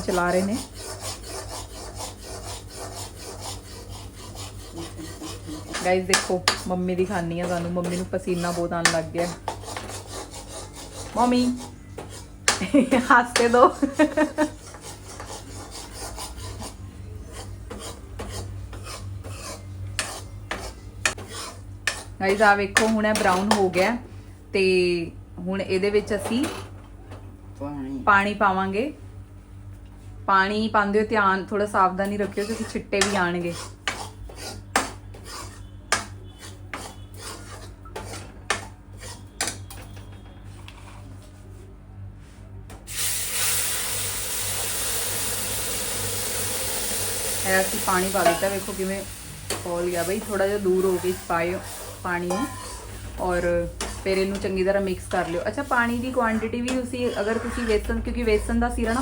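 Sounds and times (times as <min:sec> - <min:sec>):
steady low hum: 0:00.0 - 0:59.0
metal ladle scraping a pan: 0:14.6 - 0:23.6, 0:32.2 - 0:39.6, 0:47.6 - 0:59.0.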